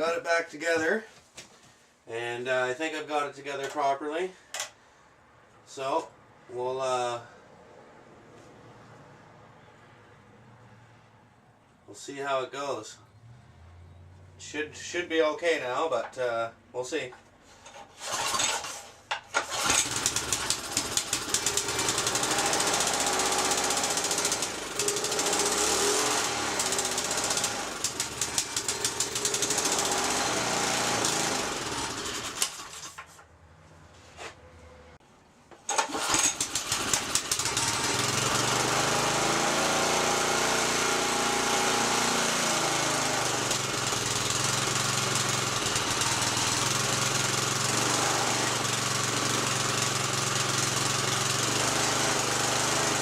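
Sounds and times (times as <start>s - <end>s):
small gasoline engine running: 18.0s - 18.8s, 19.4s - 32.9s, 35.7s - 53.0s.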